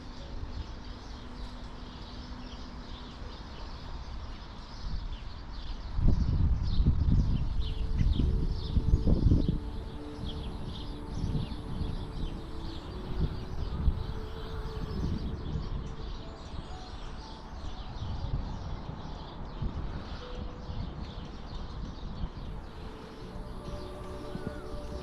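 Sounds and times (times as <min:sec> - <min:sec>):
small birds chirping: 0:00.0 - 0:25.0
low rumble: 0:06.2 - 0:16.5.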